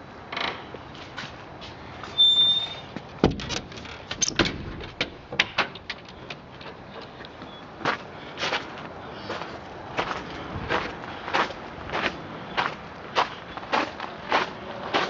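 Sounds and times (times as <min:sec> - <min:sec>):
high squeak: 0:02.1 - 0:02.9.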